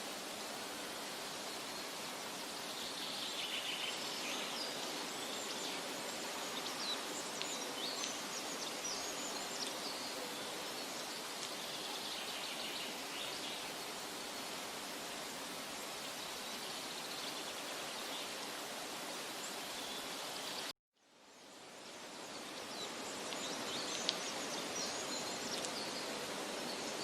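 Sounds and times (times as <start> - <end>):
flowing water: 0.0 - 20.7
small birds chirping: 0.5 - 27.0.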